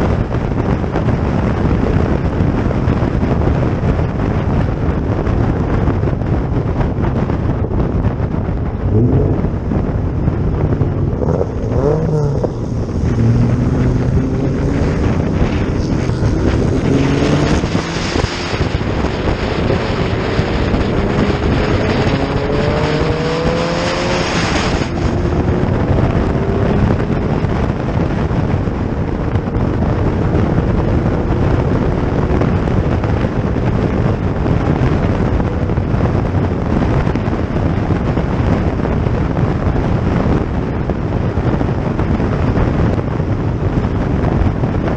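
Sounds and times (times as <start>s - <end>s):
wind buffeting microphone: 0.0s - 44.9s
racing car engines accelerating: 8.8s - 36.9s.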